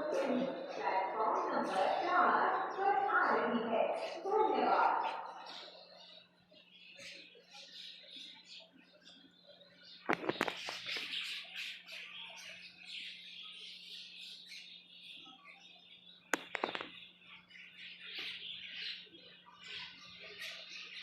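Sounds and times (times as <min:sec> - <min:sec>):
small birds chirping: 0:00.0 - 0:21.0
sharp clicks: 0:16.3 - 0:17.0.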